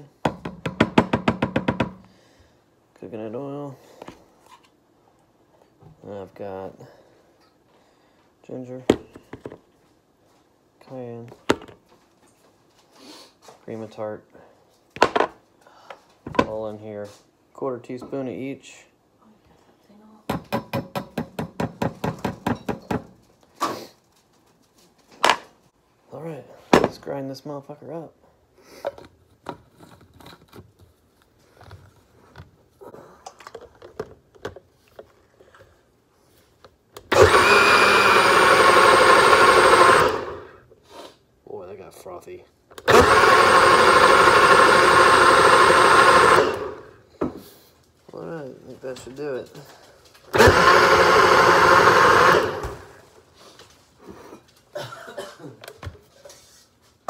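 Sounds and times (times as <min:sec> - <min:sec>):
electric blender running: 0:37.1 - 0:40.6, 0:42.8 - 0:47.0, 0:50.3 - 0:53.0.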